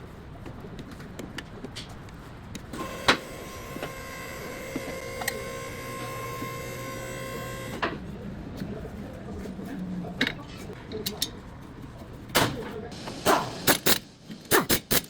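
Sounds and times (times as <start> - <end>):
small electric motor running: 2.8 - 7.8.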